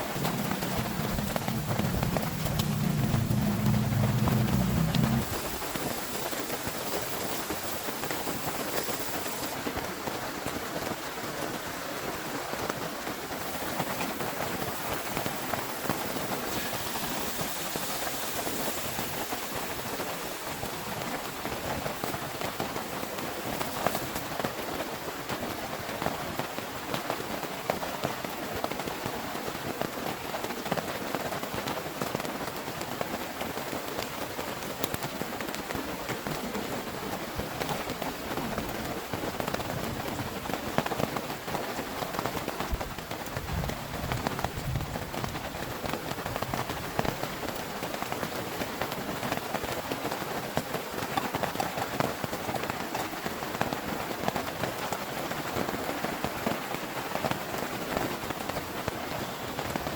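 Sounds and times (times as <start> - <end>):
raindrops ticking on surfaces: 0.0 - 25.7
heavy rain falling: 0.0 - 59.9.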